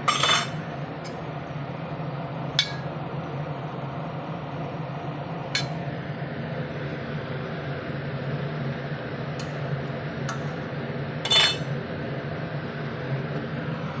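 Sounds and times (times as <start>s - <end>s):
metal utensil clinking on pan: 0.1s - 0.6s, 11.3s - 11.7s.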